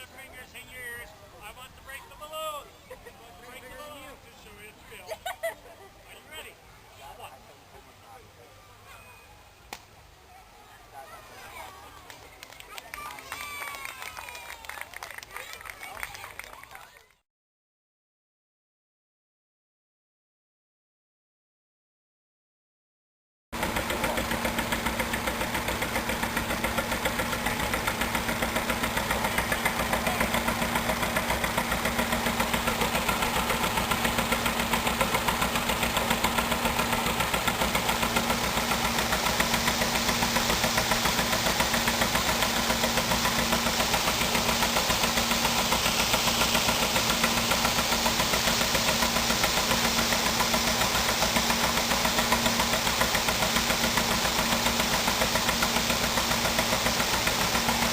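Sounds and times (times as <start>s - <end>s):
engine running at low speed: 23.6s - 57.9s.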